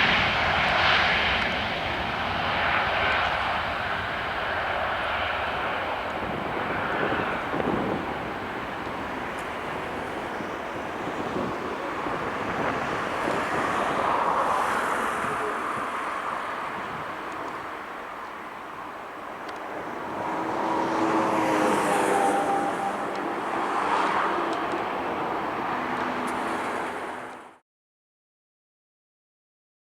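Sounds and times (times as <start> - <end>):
distant jet roar: 0.0 - 27.6.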